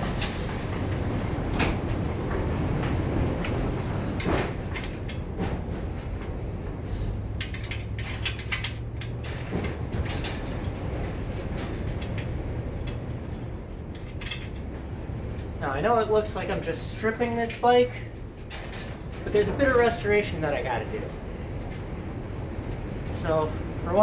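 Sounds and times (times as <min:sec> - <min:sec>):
steady low hum: 0:00.0 - 0:24.0
metal clicks of hand tools: 0:07.4 - 0:09.2.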